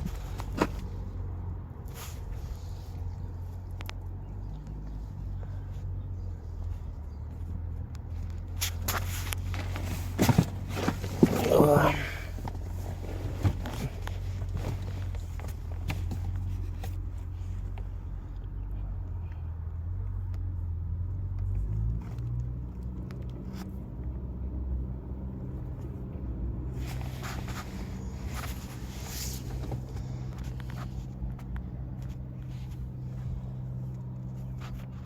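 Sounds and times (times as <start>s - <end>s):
vehicle engine idling: 0.0s - 35.0s
rustling noise: 1.8s - 3.6s, 8.4s - 17.7s, 26.7s - 35.0s.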